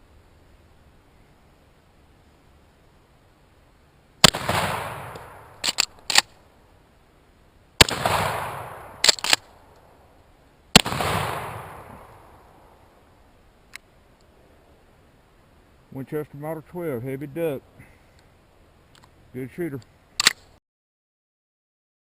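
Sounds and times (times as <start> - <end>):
shotgun shots echoing: 4.2 - 6.3, 7.8 - 9.6, 10.7 - 12.8
shotgun slide racking clack: 5.1 - 6.3, 9.0 - 9.5.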